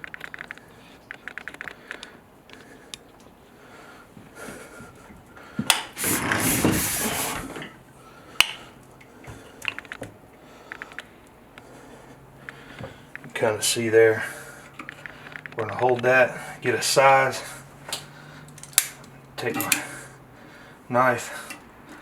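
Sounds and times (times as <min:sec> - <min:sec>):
small plastic clicks and rubbing: 0:00.0 - 0:03.3, 0:14.7 - 0:16.1
noisy rustle: 0:05.9 - 0:07.9.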